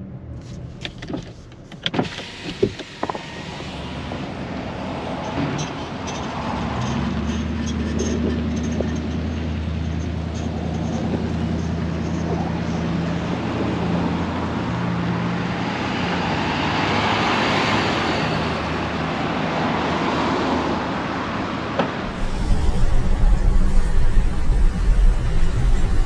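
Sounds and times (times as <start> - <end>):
low engine hum: 22.0 - 26.0.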